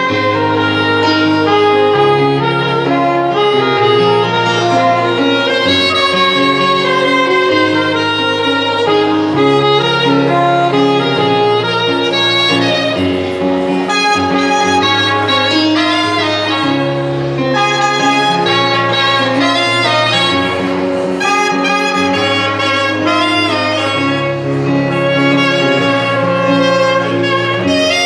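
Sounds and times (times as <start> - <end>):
instrumental music with bowed melody: 0.0 - 28.0.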